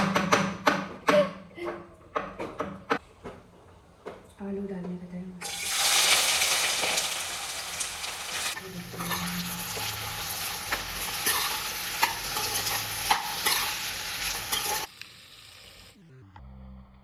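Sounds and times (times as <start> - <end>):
potatoes sizzling in oil: 5.4 - 16.0
spatula scraping a pan: 8.5 - 14.9.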